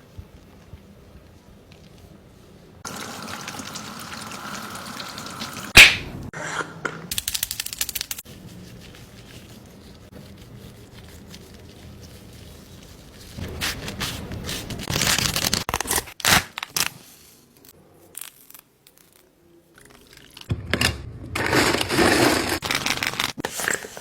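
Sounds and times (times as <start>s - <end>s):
water running: 2.8s - 6.3s.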